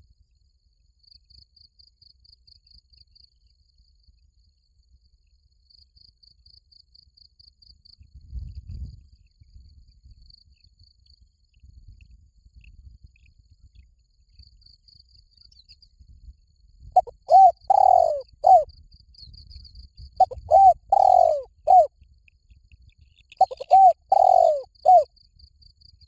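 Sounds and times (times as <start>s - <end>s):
insects chirping pulsed trill: 17.0s - 18.6s, 20.2s - 21.9s, 23.4s - 25.0s.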